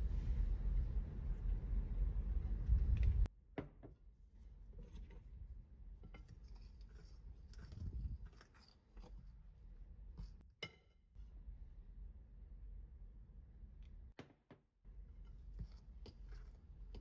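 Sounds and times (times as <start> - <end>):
faint kitchen scraping: 4.4 - 9.5, 10.1 - 10.9, 14.9 - 17.0.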